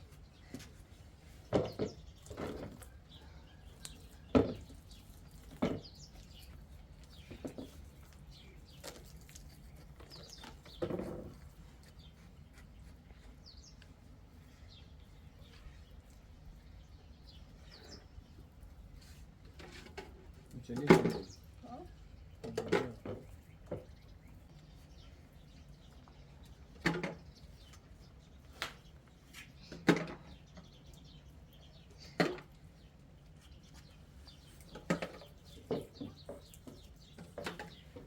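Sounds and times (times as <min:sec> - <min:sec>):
sharp knocks and thuds: 0:01.4 - 0:02.8.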